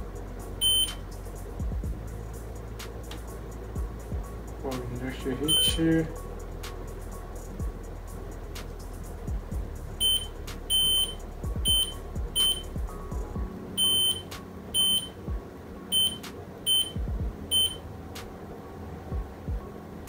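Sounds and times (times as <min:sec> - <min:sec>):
multimeter beeps: 0:00.6 - 0:00.9, 0:05.5 - 0:05.8, 0:10.0 - 0:12.7, 0:13.8 - 0:15.2, 0:15.9 - 0:17.8.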